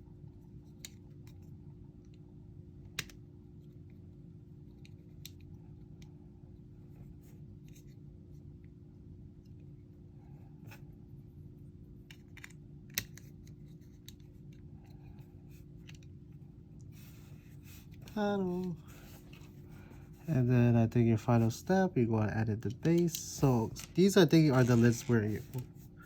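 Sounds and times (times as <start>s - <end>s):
steady low hum: 0.0s - 26.0s
small plastic clicks and snaps: 2.9s - 3.2s.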